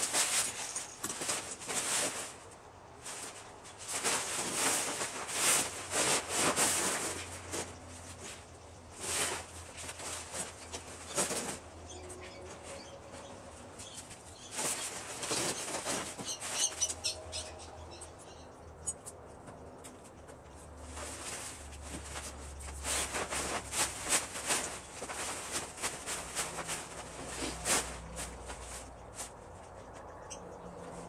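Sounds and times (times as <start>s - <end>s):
tent fabric rustling and flapping: 0.0s - 11.7s, 14.4s - 16.9s, 20.9s - 29.4s.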